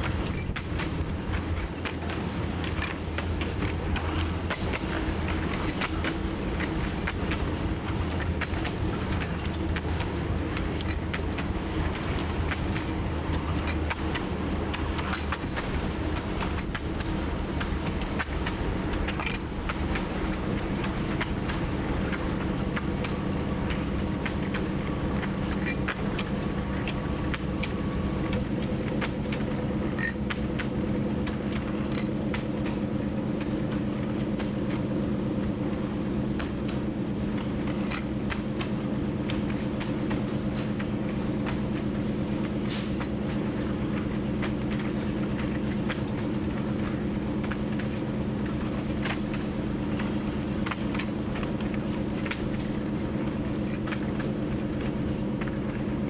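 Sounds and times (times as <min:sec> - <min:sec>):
diesel locomotive engine running: 0:00.0 - 0:56.0.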